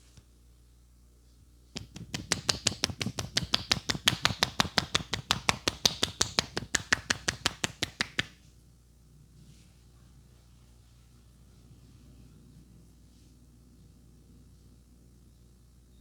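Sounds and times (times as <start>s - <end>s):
hands slapping in percussion massage: 1.8s - 8.4s.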